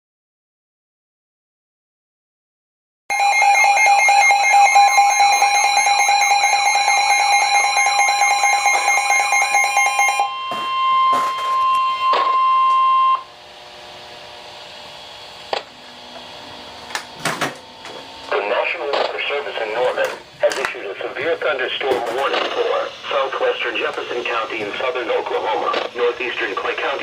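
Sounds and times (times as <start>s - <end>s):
electronic two-note alert tone: 3.1s - 13.2s
faint hum: 7.3s - 27.0s
single steady tone: 10.2s - 13.3s.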